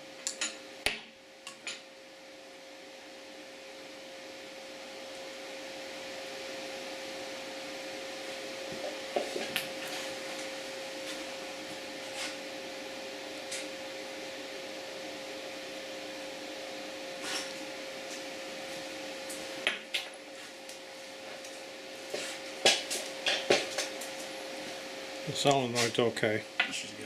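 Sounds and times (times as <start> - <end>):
fan whirring with hum: 0.0 - 27.0
small tools clicking and tapping: 1.5 - 1.8.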